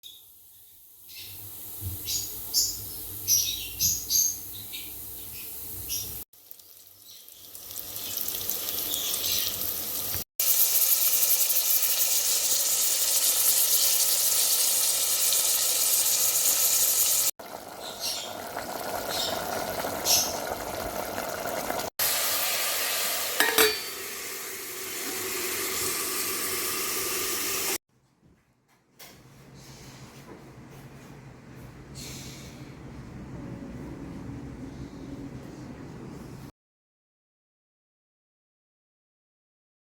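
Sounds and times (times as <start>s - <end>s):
food sizzling in hot oil: 0.1s - 5.2s, 5.8s - 27.8s.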